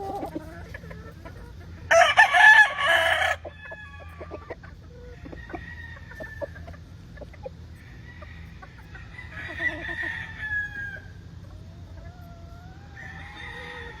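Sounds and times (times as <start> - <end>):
chickens clucking: 0.0 - 14.0
roosters crowing: 0.0 - 14.0.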